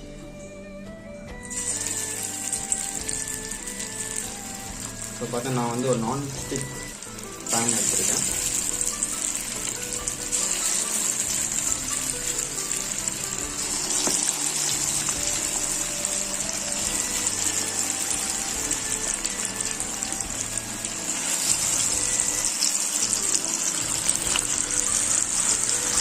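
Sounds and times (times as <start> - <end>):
chicken deep-frying in oil: 1.5 - 26.0.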